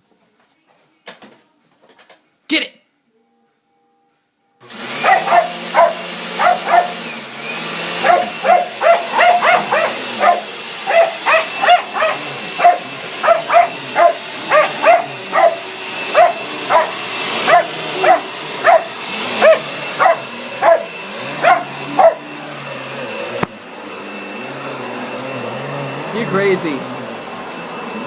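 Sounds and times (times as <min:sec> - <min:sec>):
vacuum cleaner whine: 0:04.6 - 0:28.0
dog barking: 0:05.0 - 0:07.0, 0:08.0 - 0:22.3.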